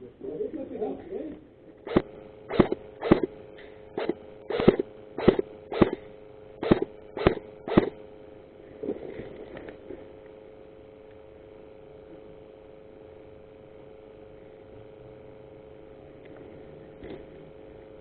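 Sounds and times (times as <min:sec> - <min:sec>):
airsoft gun shots: 0:01.8 - 0:03.4, 0:04.0 - 0:08.0.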